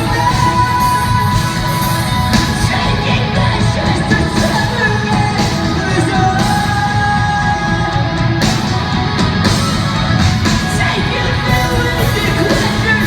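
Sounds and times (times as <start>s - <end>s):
person singing: 0.0s - 8.4s, 10.4s - 13.0s
distorted electric guitars: 0.0s - 13.0s
live rock band playing: 0.0s - 13.0s.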